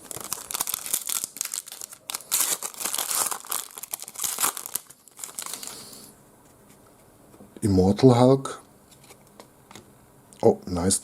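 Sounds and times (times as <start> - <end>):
wrapper crinkling and tearing: 0.0 - 5.8.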